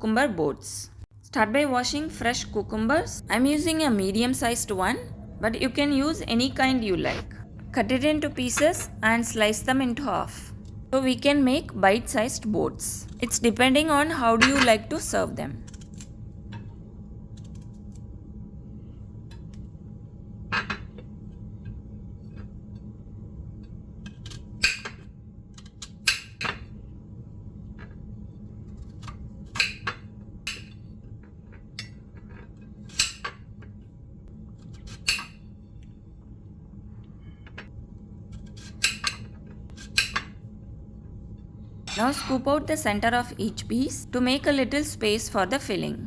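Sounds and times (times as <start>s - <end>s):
low background hum: 0.0s - 46.0s.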